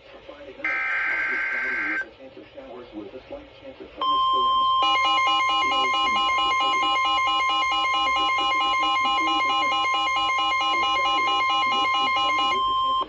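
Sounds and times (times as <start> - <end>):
alarms beeping in alternating pitches: 0.7 - 2.0, 4.0 - 13.0
steady alert tone: 0.7 - 2.0, 4.2 - 13.0.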